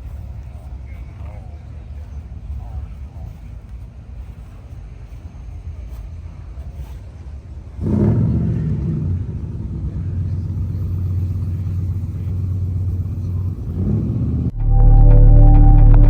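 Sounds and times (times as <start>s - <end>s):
car engine rumbling: 7.0s - 16.0s.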